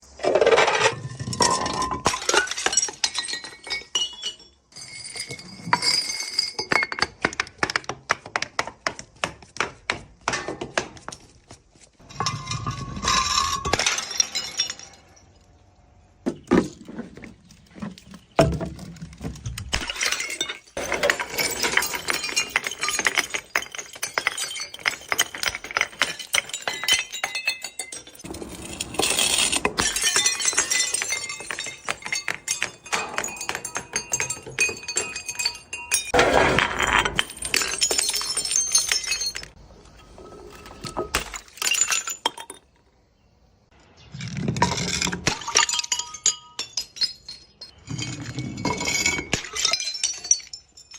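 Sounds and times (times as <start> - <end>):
glass bottles smashing: 0.4 - 7.8, 12.0 - 15.6, 16.3 - 42.8, 44.2 - 50.9
glass shards clinking: 12.0 - 15.5, 19.6 - 42.7, 44.6 - 50.9.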